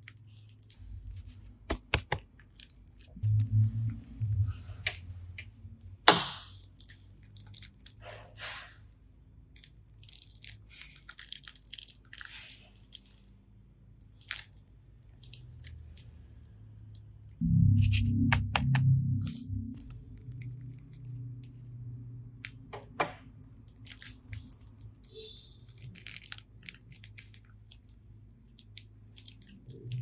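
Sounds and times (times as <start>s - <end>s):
music: 17.4s - 19.8s.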